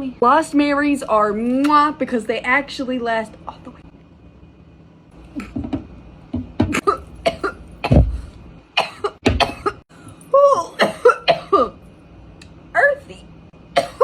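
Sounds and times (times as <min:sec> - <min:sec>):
woman coughing: 0:06.7 - 0:08.2, 0:08.8 - 0:09.8, 0:10.5 - 0:11.8, 0:13.7 - 0:14.0.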